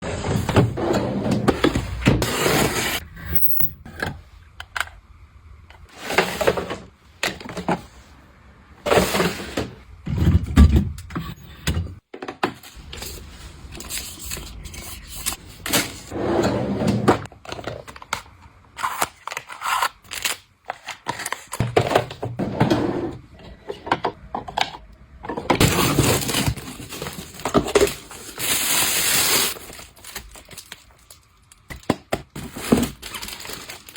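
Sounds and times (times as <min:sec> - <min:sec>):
packaging crinkling and tearing: 0:18.8 - 0:21.6, 0:25.6 - 0:33.9.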